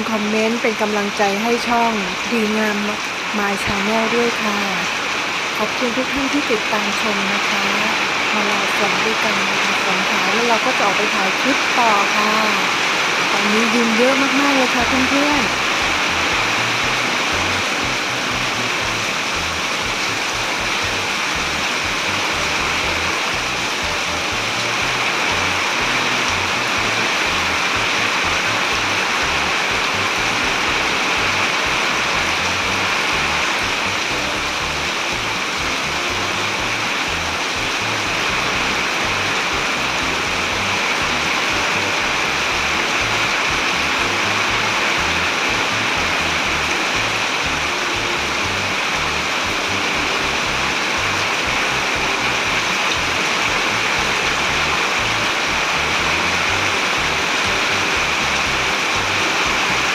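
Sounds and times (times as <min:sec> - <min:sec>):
heavy rain hissing: 0:00.0 - 0:59.9
background music with bass line: 0:14.7 - 0:59.9.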